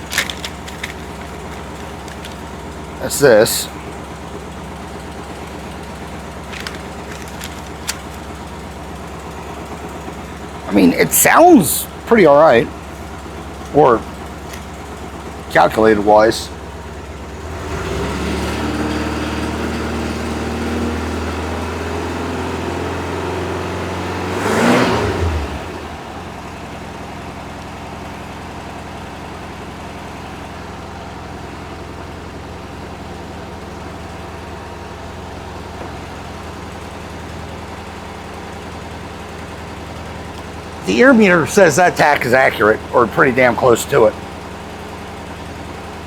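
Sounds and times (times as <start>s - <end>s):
engine running at raised revs: 9.2s - 26.6s.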